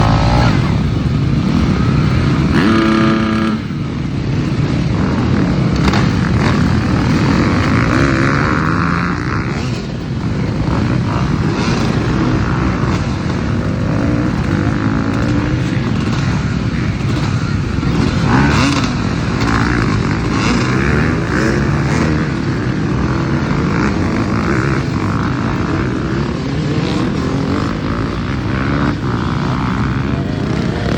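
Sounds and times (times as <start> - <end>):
motorcycle engine running: 0.0 - 30.9.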